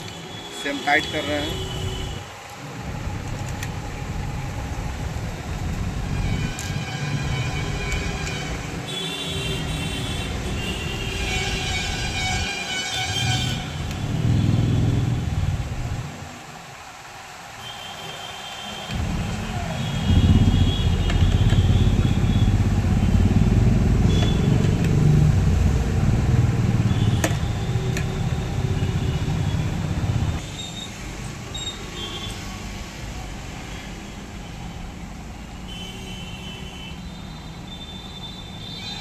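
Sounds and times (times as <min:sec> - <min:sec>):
vehicle engine rumbling: 0:18.9 - 0:30.4.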